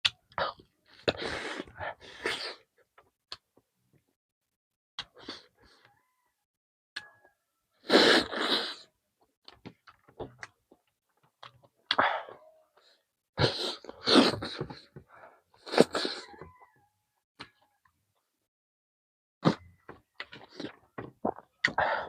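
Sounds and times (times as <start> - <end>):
person chewing: 20.2 - 21.8.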